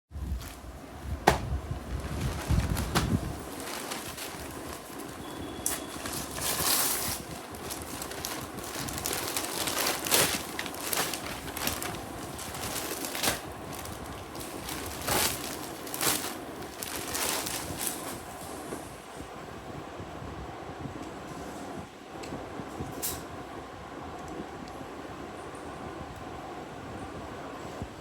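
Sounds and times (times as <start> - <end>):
plastic packaging crinkling: 1.3 - 18.6.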